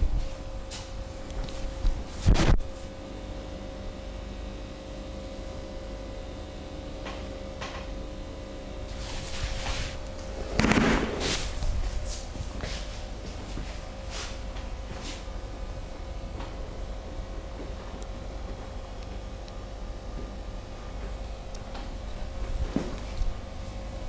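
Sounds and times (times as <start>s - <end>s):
faint steady hum: 0.0s - 24.0s
hand slap: 10.6s - 11.4s.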